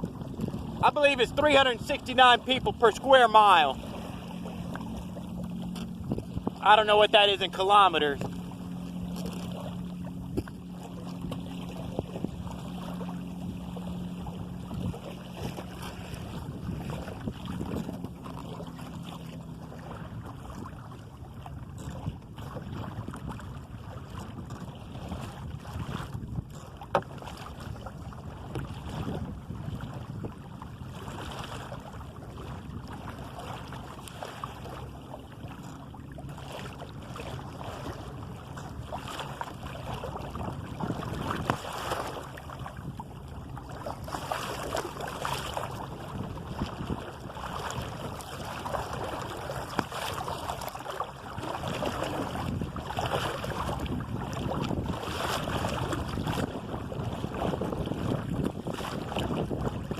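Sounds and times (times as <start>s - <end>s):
wind buffeting microphone: 0.0s - 3.0s, 3.6s - 6.6s, 11.2s - 18.9s, 19.8s - 26.6s, 27.6s - 31.2s, 39.7s - 50.2s, 51.3s - 59.9s
water lapping along a hull: 0.0s - 59.9s.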